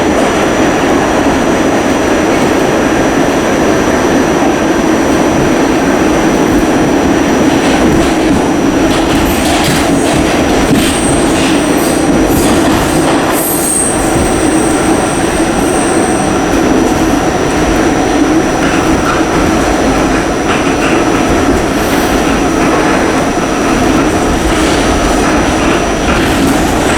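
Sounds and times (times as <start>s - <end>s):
subway train rumbling: 0.0s - 26.9s.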